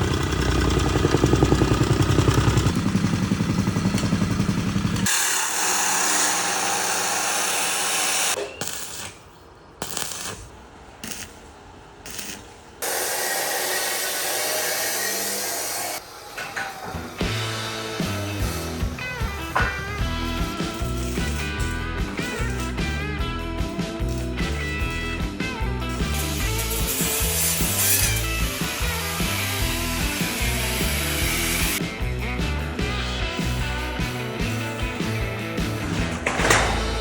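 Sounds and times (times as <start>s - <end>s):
clatter: 0.0s - 5.2s
power tool whirring: 4.8s - 9.1s, 12.1s - 22.9s, 25.9s - 31.8s.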